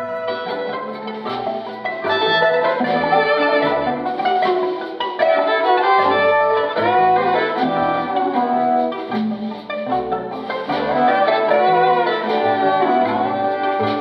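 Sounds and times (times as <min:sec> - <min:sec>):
low instrumental accompaniment: 0:00.0 - 0:14.0
violin melody with vibrato: 0:00.0 - 0:14.0.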